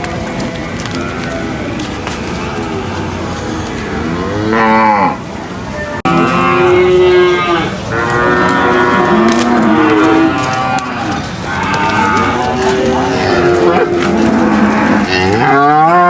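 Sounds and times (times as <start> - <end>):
cattle mooing: 2.3 - 16.0.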